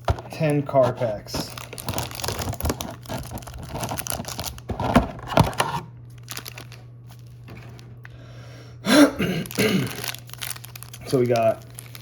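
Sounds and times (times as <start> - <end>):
foil wrappers crinkling: 0.0 - 7.9, 9.3 - 12.0.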